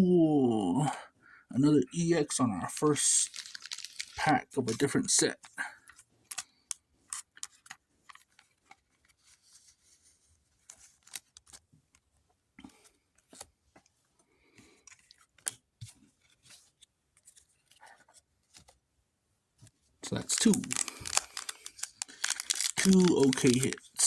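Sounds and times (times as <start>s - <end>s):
cards rustling: 2.7s - 13.8s, 14.6s - 18.8s, 20.0s - 24.0s
trading cards clicking: 20.1s - 24.0s.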